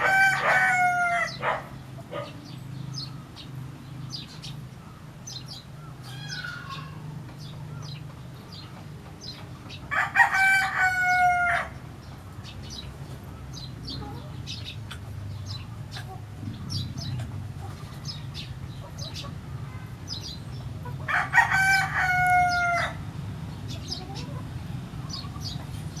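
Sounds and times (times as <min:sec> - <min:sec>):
rooster crowing: 0:00.0 - 0:01.6, 0:06.0 - 0:07.2, 0:09.9 - 0:11.8, 0:21.1 - 0:23.0
steady low hum: 0:11.8 - 0:21.1.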